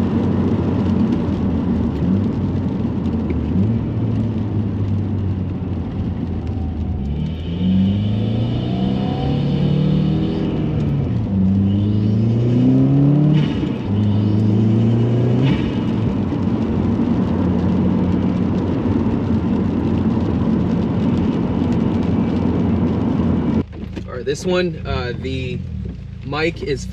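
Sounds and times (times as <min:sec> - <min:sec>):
car engine accelerating: 0:00.0 - 0:26.9
high turbo whine: 0:06.0 - 0:18.4.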